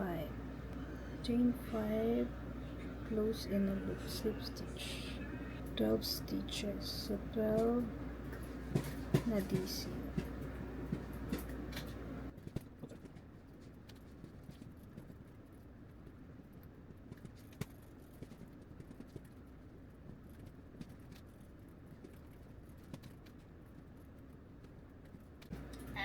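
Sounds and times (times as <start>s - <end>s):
low hum: 0.0s - 12.3s.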